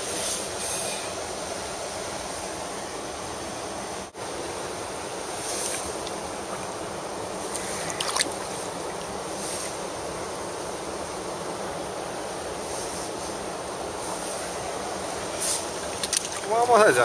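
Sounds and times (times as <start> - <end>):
stream water rushing: 7.5 - 9.2, 15.7 - 17.0
sharp clicks or splashes: 16.0 - 16.5.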